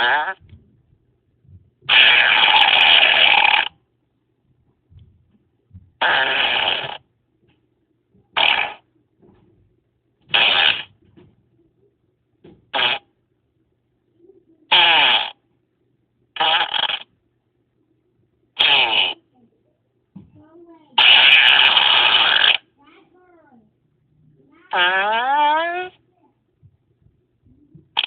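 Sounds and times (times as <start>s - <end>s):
raspy fart sounds: 0.0s - 0.6s, 1.8s - 3.8s, 6.0s - 7.1s, 8.4s - 8.9s, 10.2s - 11.1s, 12.6s - 13.1s, 14.7s - 15.4s, 16.4s - 17.1s, 18.6s - 19.3s, 21.0s - 22.7s, 24.7s - 26.0s.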